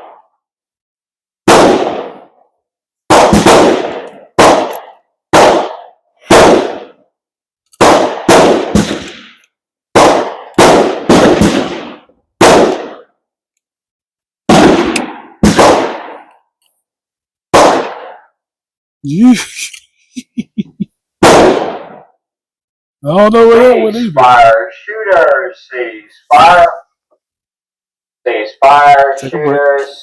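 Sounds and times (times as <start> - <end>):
rifle shots echoing: 1.5 - 2.4, 3.1 - 7.0, 7.8 - 13.1, 14.5 - 16.3, 17.5 - 18.3, 21.2 - 22.0.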